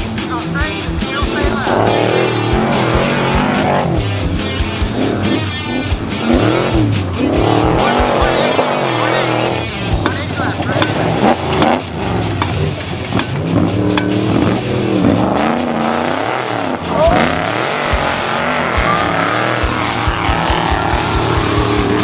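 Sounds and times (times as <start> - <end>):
low thumps: 0.0 - 15.6
truck engine revving: 0.0 - 22.0.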